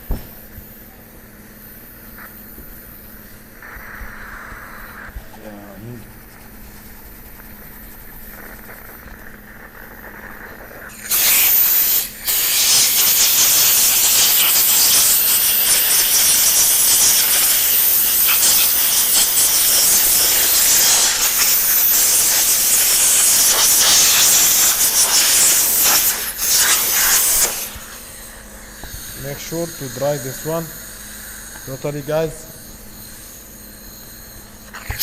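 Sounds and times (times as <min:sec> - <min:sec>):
cleaning jet hissing: 0:03.5 - 0:07.3, 0:09.2 - 0:33.4.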